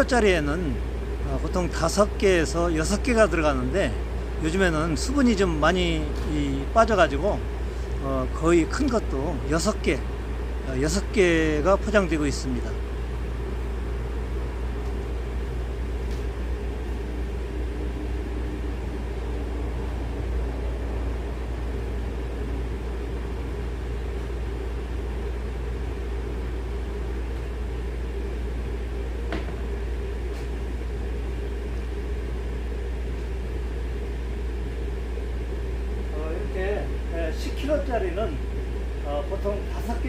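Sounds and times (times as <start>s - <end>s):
low mechanical hum: 0.0s - 40.0s.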